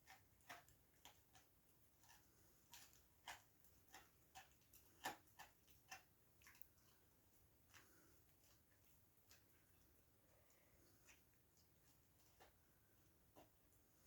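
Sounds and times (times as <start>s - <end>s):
dog gnawing a chew: 0.0s - 10.1s.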